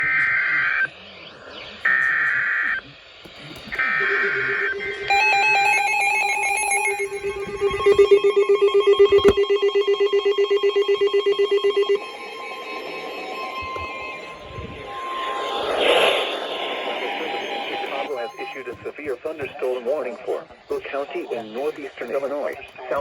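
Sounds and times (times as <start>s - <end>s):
screeching digital data bursts: 3.8s - 19.0s
pulsing alert tone beeping: 3.9s - 18.7s.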